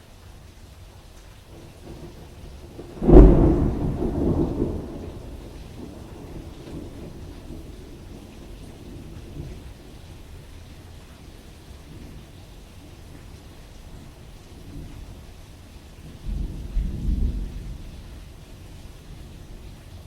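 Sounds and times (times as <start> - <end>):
steady rain: 0.0 - 20.0
close thunderclap rumbling: 1.5 - 10.3, 16.0 - 19.9.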